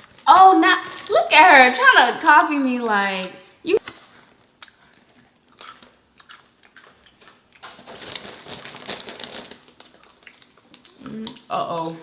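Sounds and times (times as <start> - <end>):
person crunching snack food: 4.6 - 11.4.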